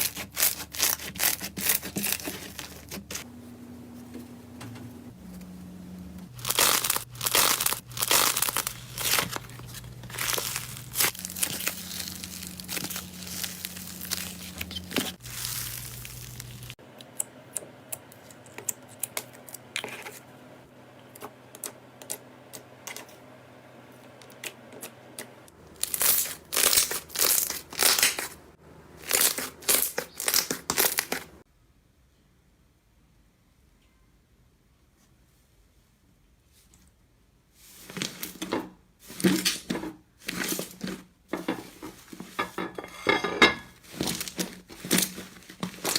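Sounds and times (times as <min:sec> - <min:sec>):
slime crackling: 0:06.3 - 0:16.8.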